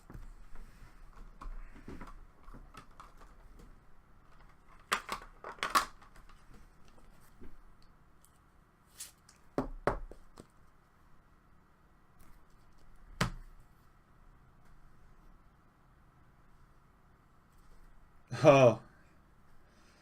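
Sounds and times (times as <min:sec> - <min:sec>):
cards rustling and clicking: 0:04.3 - 0:07.2.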